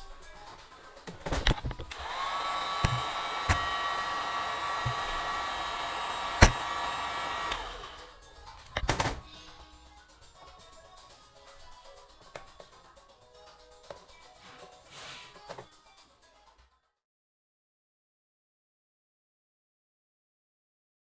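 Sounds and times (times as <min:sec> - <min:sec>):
clicks: 0:01.3 - 0:03.9, 0:04.8 - 0:08.0
small electric motor whirring: 0:01.8 - 0:08.2.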